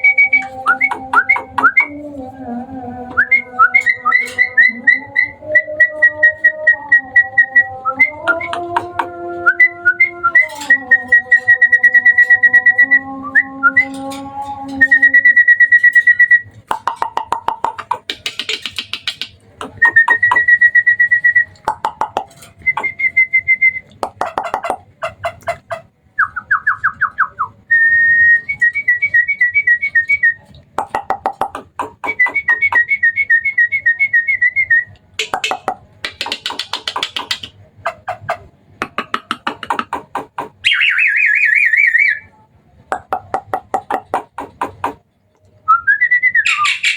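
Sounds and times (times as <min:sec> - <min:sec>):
starling singing: 0:00.0 - 0:27.6, 0:28.4 - 0:42.4, 0:43.0 - 0:45.0, 0:46.3 - 0:46.9.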